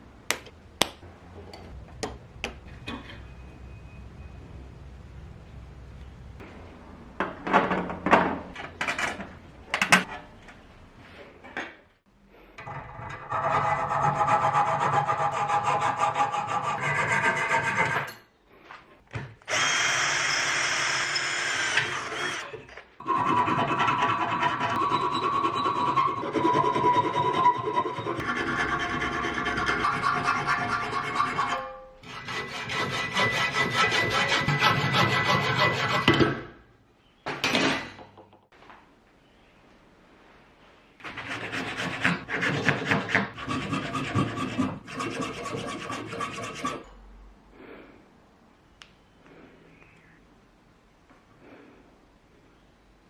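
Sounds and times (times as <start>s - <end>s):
parts clattering on a workbench: 7.2s - 10.6s, 11.2s - 11.9s, 37.3s - 38.5s
file rasping on metal part: 13.2s - 18.1s, 23.0s - 36.1s, 41.0s - 46.9s
tool rubbing against a workpiece: 41.0s - 46.9s.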